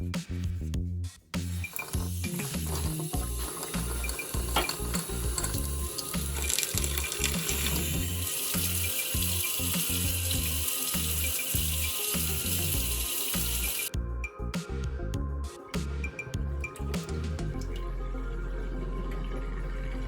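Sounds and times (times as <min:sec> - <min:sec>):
background music with steady beat: 0:00.0 - 0:20.0
tap water running into sink: 0:01.4 - 0:13.9.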